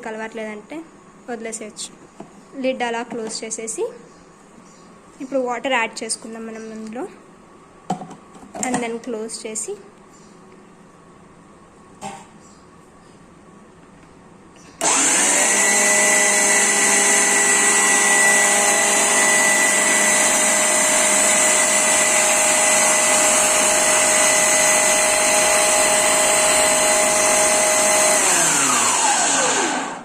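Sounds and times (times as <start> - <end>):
mixer grinder motor whining: 14.8 - 30.0.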